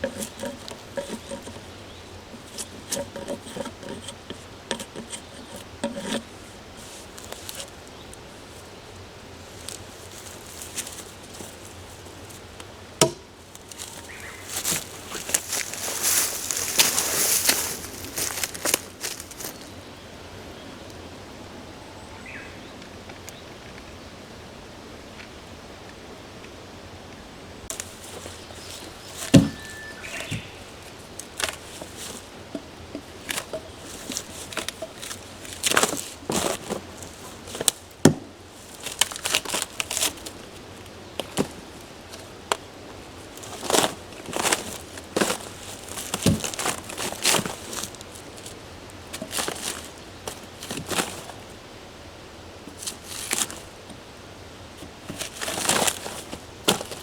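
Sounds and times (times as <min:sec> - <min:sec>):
dry branches rustling and crackling: 0:00.0 - 0:21.1, 0:27.6 - 0:57.0
sharp knocks: 0:13.0 - 0:13.3, 0:29.2 - 0:30.5.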